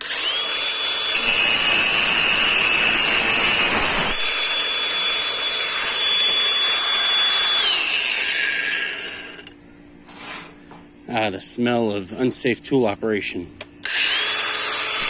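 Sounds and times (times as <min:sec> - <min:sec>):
angle grinder cutting metal: 0:00.0 - 0:10.5, 0:13.8 - 0:15.0.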